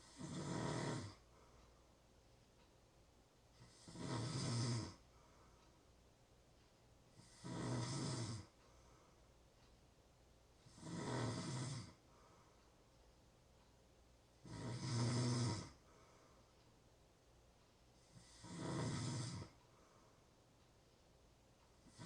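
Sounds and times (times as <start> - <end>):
person snoring: 0.0 - 1.2, 3.6 - 5.0, 7.2 - 8.5, 10.6 - 12.0, 14.4 - 15.8, 18.1 - 19.6.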